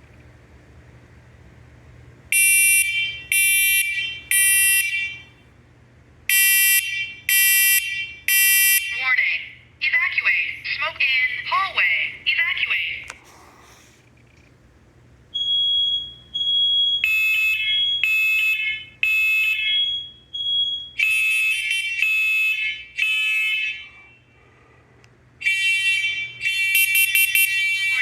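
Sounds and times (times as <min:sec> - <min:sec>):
harsh smoke alarm beeping: 0:02.3 - 0:05.4, 0:06.3 - 0:09.3, 0:15.3 - 0:24.4, 0:25.4 - 0:28.0.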